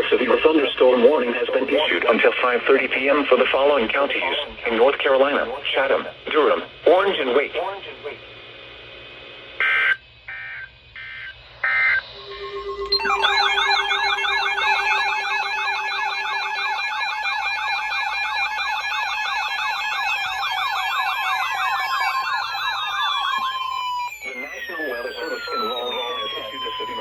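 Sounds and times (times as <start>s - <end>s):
wavering electronic sirens: 9.8s - 27.0s
low steady tone: 11.5s - 17.5s.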